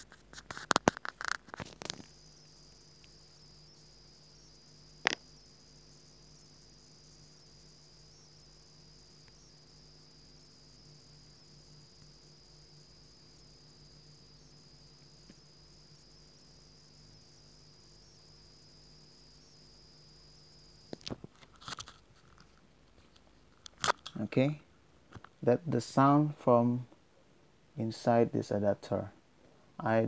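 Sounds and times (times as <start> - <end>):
power adapter high-pitched whine: 0.0 - 22.5.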